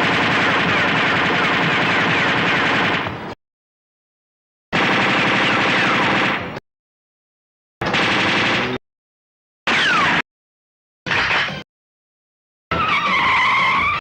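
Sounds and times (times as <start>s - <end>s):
machine-gun fire: 0.0s - 3.2s, 4.7s - 6.6s, 7.8s - 8.8s.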